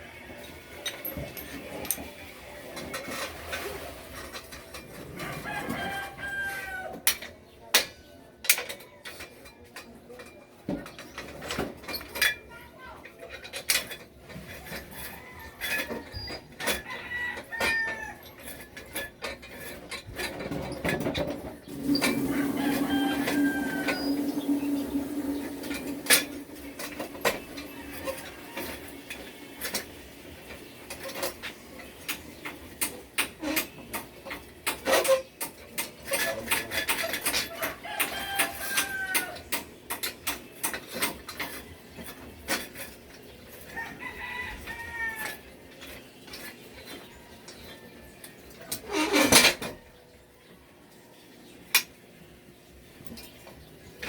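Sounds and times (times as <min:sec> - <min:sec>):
rooster crowing: 0:05.2 - 0:07.0, 0:14.9 - 0:18.3, 0:22.2 - 0:25.0, 0:37.5 - 0:39.5, 0:43.7 - 0:45.4.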